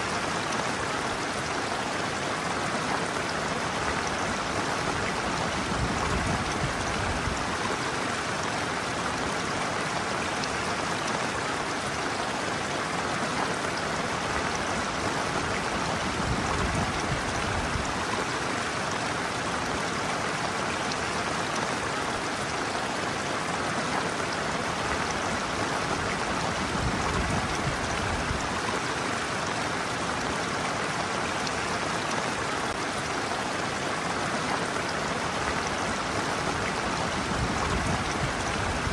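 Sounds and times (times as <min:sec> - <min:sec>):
stream water rushing: 0:00.0 - 0:38.9.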